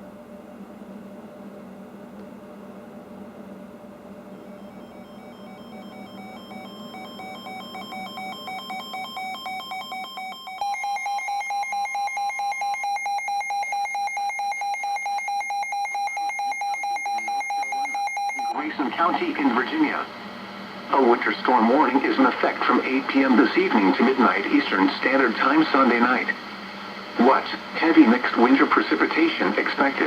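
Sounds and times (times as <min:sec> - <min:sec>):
rapidly pulsing alarm tone: 0:04.5 - 0:20.1
pulsed electronic alarm beeps: 0:04.6 - 0:18.7.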